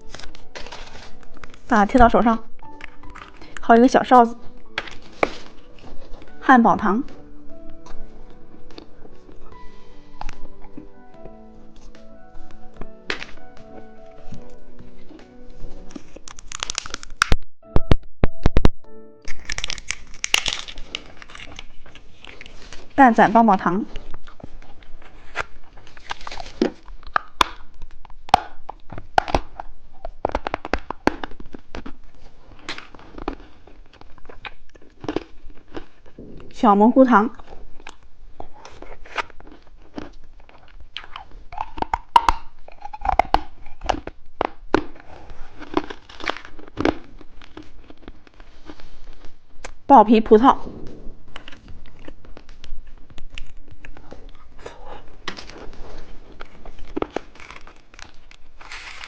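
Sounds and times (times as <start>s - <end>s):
plastic wrapper tearing and crinkling: 0.0s - 1.7s, 2.4s - 3.6s, 4.4s - 6.4s, 11.7s - 17.4s, 19.2s - 23.0s, 23.9s - 36.3s, 37.3s - 49.8s, 51.3s - 59.0s
candy crunching while chewed: 0.0s - 6.4s, 7.0s - 17.4s, 19.2s - 23.0s, 23.8s - 49.9s, 51.2s - 59.0s
background music: 0.0s - 27.7s.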